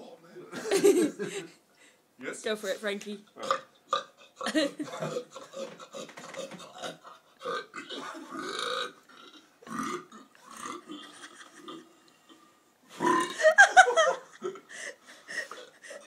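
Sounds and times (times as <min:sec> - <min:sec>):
person burping: 0:03.4 - 0:06.0, 0:06.7 - 0:12.4, 0:13.0 - 0:13.6.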